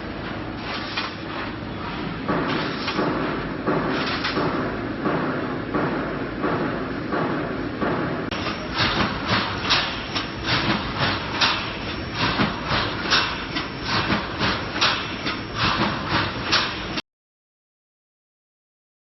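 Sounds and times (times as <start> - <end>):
steady mechanical noise: 0.0 - 17.0
welding machine rhythmic strokes: 8.3 - 17.0.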